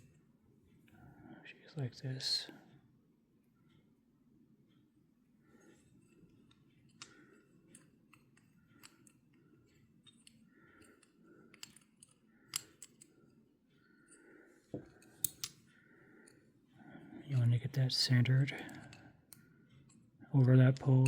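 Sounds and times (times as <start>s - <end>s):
small metal parts clicking: 6.5s - 13.1s, 14.9s - 15.6s.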